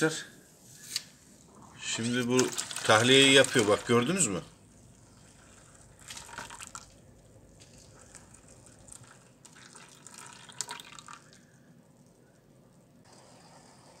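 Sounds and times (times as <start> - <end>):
water trickling and splashing: 2.1 - 11.5.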